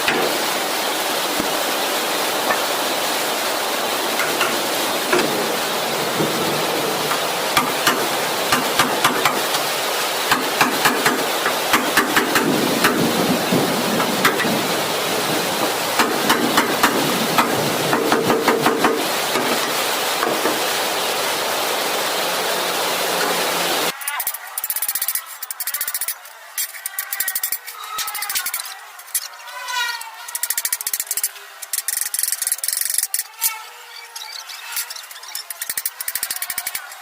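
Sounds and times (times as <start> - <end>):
steady hiss: 0.0 - 37.0
hammer tapping on sheet metal: 7.6 - 9.6, 10.3 - 13.1, 16.0 - 19.6.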